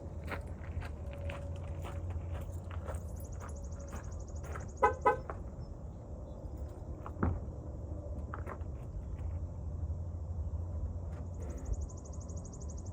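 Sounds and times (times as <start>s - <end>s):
horn toots: 4.8s - 5.3s.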